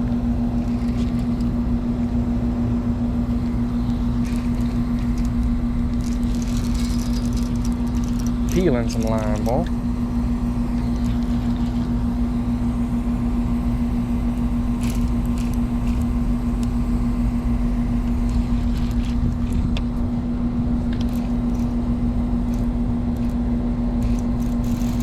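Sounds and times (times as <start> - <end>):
low rumble: 0.0 - 25.0
steady mechanical hum: 0.0 - 25.0.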